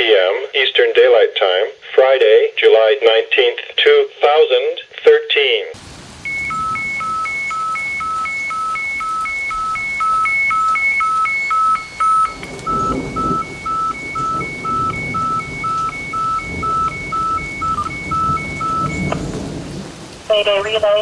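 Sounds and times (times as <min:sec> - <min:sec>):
rough radio noise: 0:00.0 - 0:19.3, 0:20.3 - 0:21.0
two-tone radio alarm signal: 0:06.2 - 0:19.5, 0:20.3 - 0:21.0.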